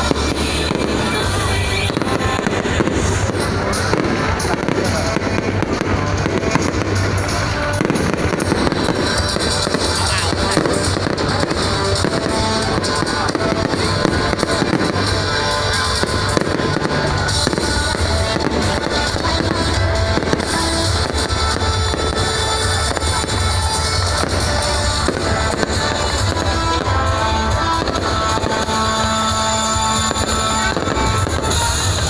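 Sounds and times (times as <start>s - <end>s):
fireworks crackling and popping: 0.0s - 32.0s
loud music with heavy bass: 0.0s - 32.0s.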